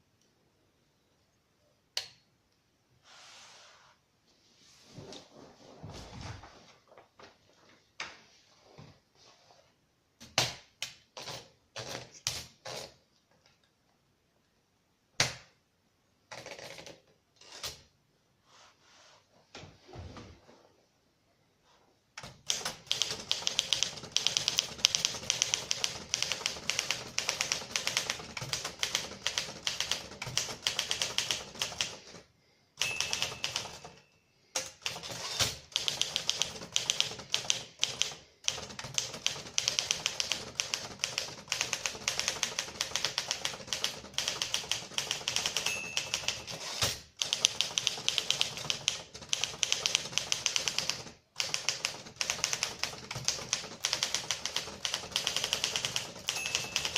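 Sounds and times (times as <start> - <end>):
typewriter typebars clicking: 22.2 - 32.2, 32.8 - 34.0, 34.6 - 56.9.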